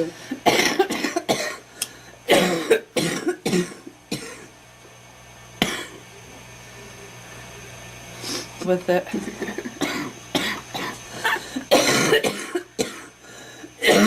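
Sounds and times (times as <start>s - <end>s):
girl coughing: 0.4s - 1.7s, 2.3s - 4.5s, 5.6s - 6.0s, 9.5s - 13.2s, 13.8s - 14.0s.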